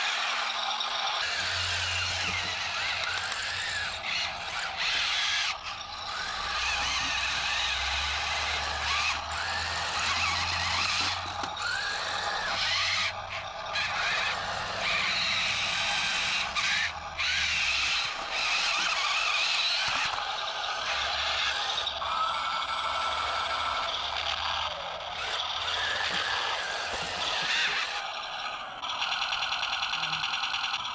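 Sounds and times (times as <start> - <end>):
toy tank motors whirring: 0.0 - 30.9
plastic tracks scraping: 1.2 - 17.4, 18.0 - 20.4, 25.2 - 28.0.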